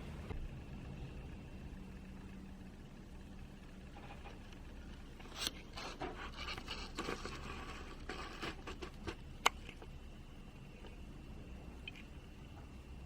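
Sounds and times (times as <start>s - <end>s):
small parts rubbing and scraping: 5.2s - 9.9s.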